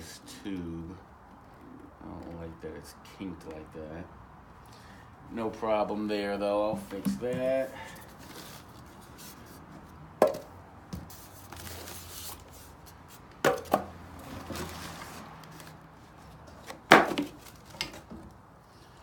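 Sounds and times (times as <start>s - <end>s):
sharp knocks and clunks: 6.6s - 7.7s, 10.2s - 11.1s, 13.4s - 13.9s.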